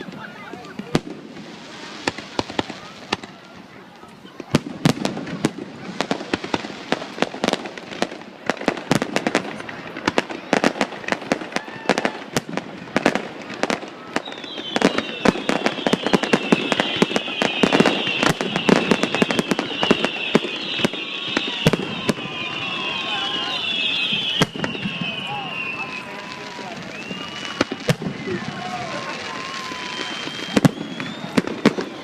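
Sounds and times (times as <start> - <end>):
fireworks bangs and crackles: 0.0 - 32.0
fireworks whistles falling in pitch: 8.9 - 32.0.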